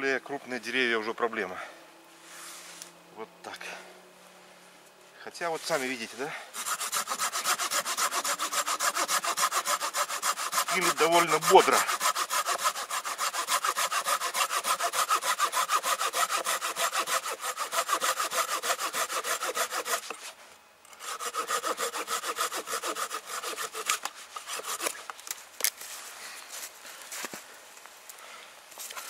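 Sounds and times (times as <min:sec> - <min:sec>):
hand saw cutting wood: 0:05.6 - 0:25.1.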